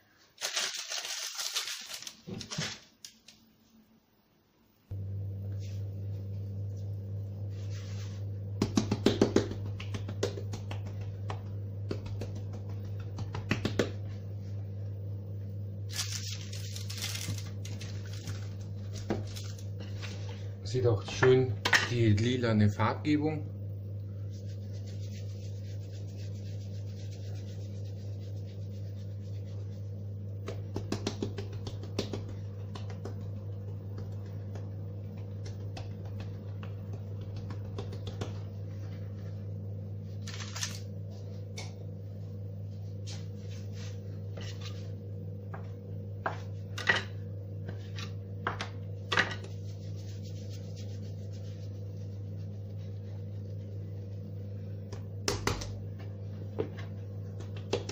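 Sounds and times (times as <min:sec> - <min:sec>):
steady low hum: 0:02.9 - 0:57.9
dough handled on work surface: 0:07.4 - 0:14.6, 0:24.2 - 0:39.4, 0:42.7 - 0:46.8, 0:47.6 - 0:57.9.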